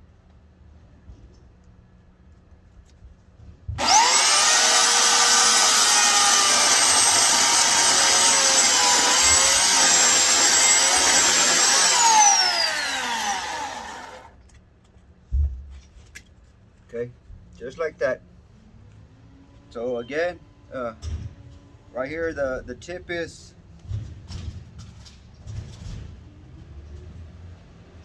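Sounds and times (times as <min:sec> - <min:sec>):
electric chainsaw cutting log: 0:03.8 - 0:14.3.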